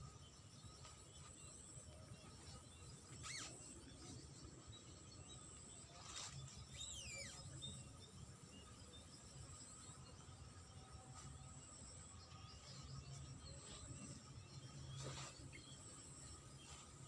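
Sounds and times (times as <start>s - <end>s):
high-pitched insect drone: 0.0s - 4.4s, 5.8s - 17.0s
downward whistled bird calls: 3.1s - 4.1s, 6.0s - 7.7s.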